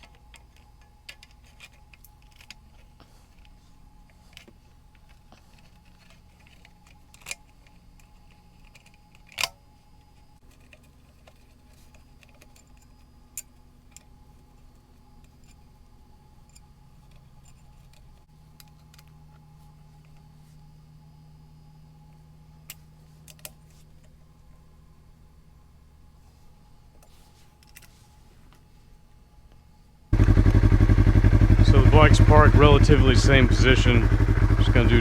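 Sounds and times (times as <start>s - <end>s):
faint low steady hum: 0.0s - 35.0s.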